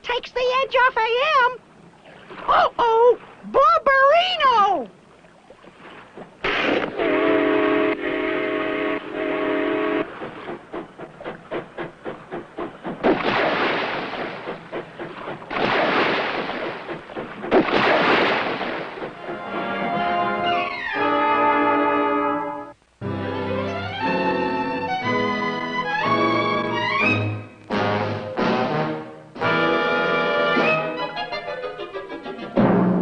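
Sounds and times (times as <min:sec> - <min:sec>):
chuffing puffs: 0:05.8 - 0:20.1.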